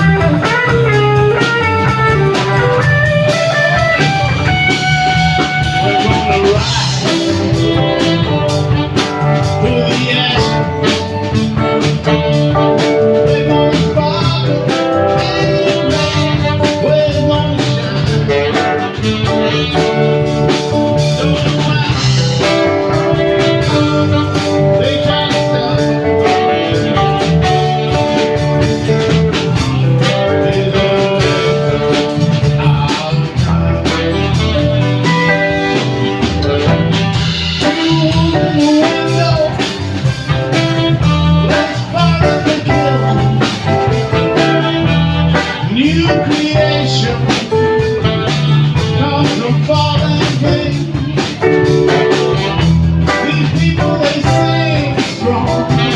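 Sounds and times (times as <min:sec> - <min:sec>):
bass: 0:00.0 - 0:55.9
drum kit: 0:00.0 - 0:55.9
guitar: 0:00.0 - 0:55.9.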